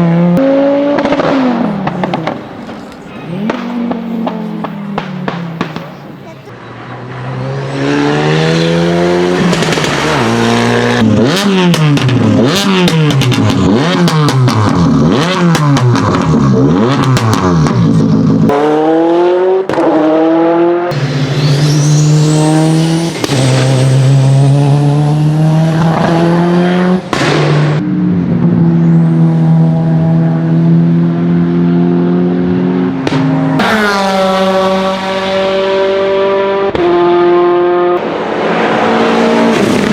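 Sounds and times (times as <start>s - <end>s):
race car engines revving: 0.0s - 39.9s
exhaust pops and crackles: 1.0s - 6.2s, 9.4s - 18.6s
high whistle: 21.2s - 24.0s.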